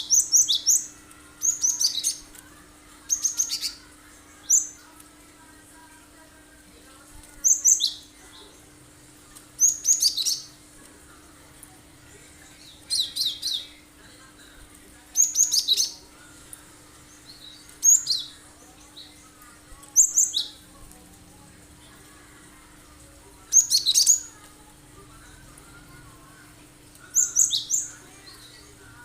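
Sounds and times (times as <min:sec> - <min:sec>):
bird singing high-pitched notes: 0:00.0 - 0:02.3, 0:27.1 - 0:28.6.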